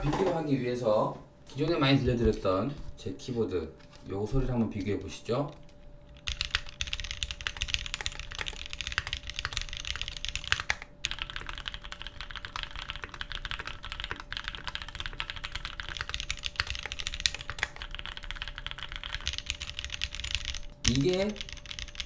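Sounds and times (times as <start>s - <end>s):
typing on mechanical keyboard: 6.2s - 22.0s.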